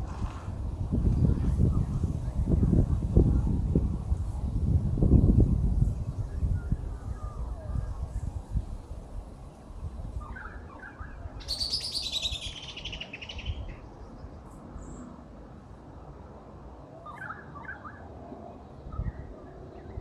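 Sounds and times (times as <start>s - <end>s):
bird chirps: 10.2s - 15.0s.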